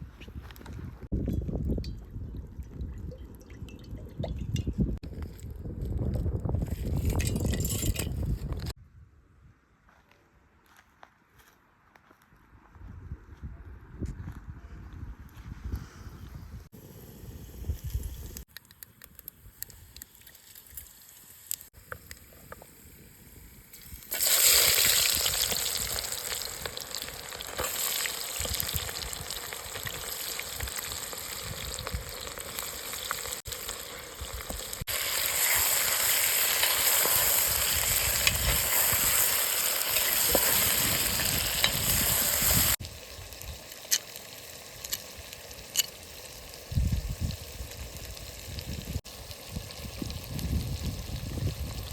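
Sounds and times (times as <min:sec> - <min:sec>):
food sizzling in hot oil: 0:19.8 - 0:21.8, 0:22.5 - 0:51.9.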